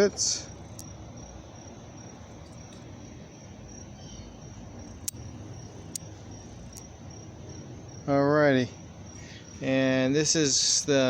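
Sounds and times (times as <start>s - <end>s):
crickets chirping: 0.0s - 11.0s
sharp clicks: 4.9s - 6.1s.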